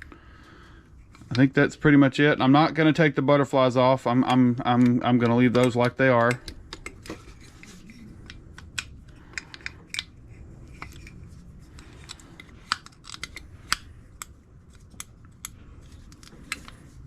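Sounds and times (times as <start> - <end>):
low steady hum: 0.0 - 17.0
small metal parts clicking: 11.8 - 16.8.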